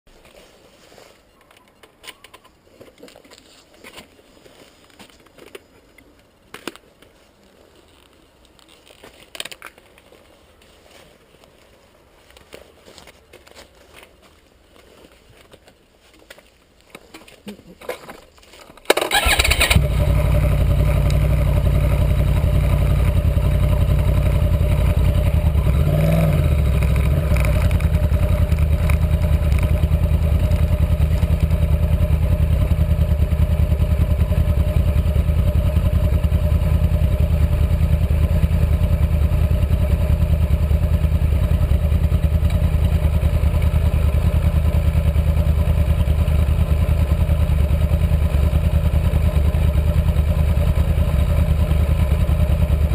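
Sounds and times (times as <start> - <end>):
motorcycle engine starting and idling: 18.8 - 52.9
engine revving: 19.1 - 52.9.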